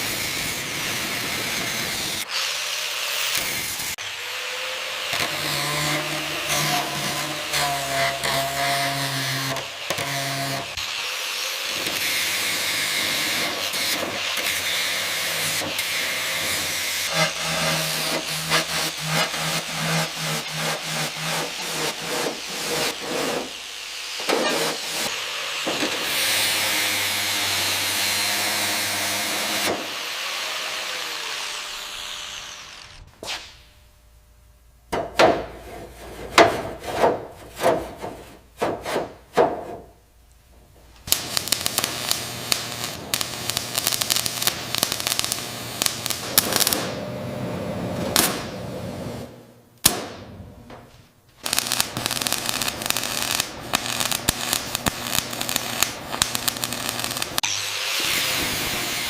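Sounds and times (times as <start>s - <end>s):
power tool buzzing: 0.0s - 33.2s, 41.1s - 47.2s, 51.4s - 59.0s
loud hiss: 10.8s - 33.7s
scraping strokes: 35.5s - 39.9s.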